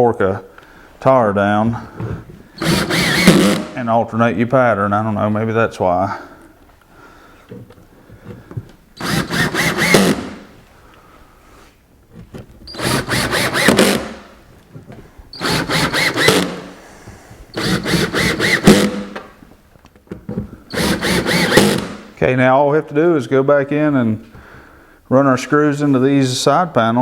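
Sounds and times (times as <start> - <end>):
cordless drill driving screws: 2.6 - 3.8, 9.0 - 10.5, 12.7 - 14.4, 15.3 - 16.8, 17.5 - 19.2, 20.7 - 22.1.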